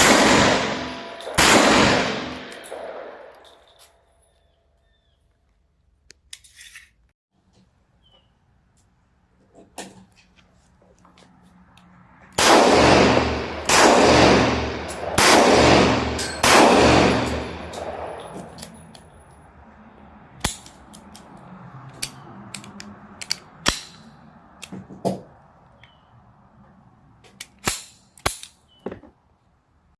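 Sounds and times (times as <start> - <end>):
pistol shots echoing: 0.0 - 3.4, 12.4 - 18.5.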